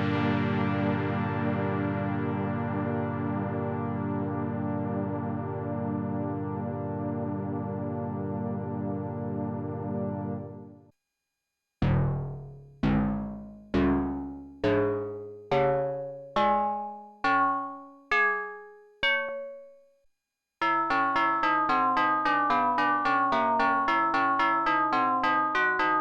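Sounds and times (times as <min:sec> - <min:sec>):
synthesizer single notes: 0:11.8 - 0:17.8
fast repeating note pattern: 0:11.8 - 0:18.2.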